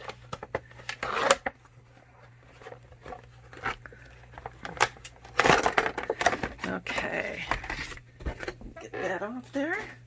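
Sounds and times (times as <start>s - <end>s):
packaging crinkling and scraping: 0.0s - 10.0s.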